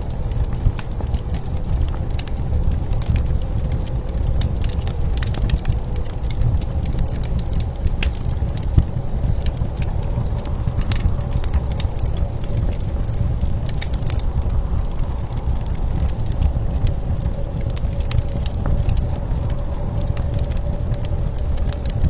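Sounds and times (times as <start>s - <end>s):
low rumble of wind: 0.0s - 22.0s
wood fire crackling: 0.0s - 22.0s.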